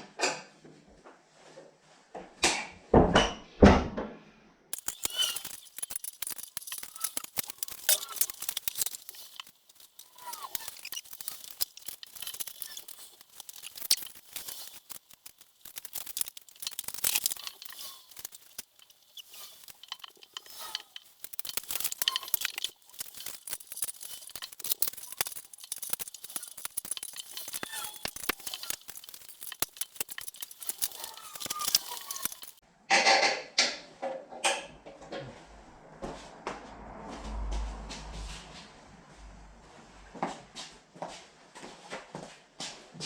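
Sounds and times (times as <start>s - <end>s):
plastic crackling and tearing: 4.8s - 32.6s
small metal clinks: 4.8s - 32.6s.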